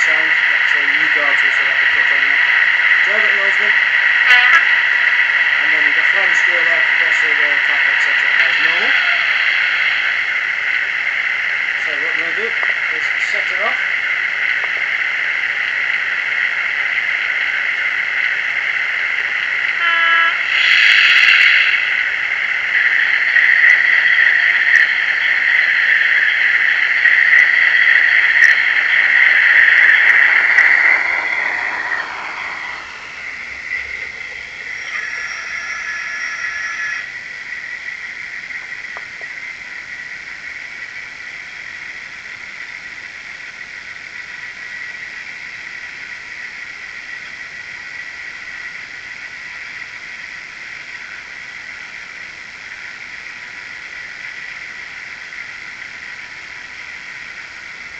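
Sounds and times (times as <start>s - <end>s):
loud hissing: 0.0s - 57.9s
model locomotive running noise: 0.0s - 57.9s
thin steady whine: 0.0s - 57.9s
brief tone: 19.8s - 20.4s, 31.2s - 37.2s.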